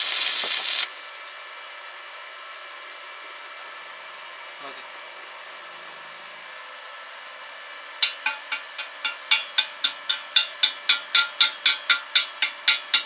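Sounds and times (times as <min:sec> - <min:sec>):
steady hiss: 0:00.0 - 0:01.4
sharp ringing metallic taps: 0:08.0 - 0:13.0.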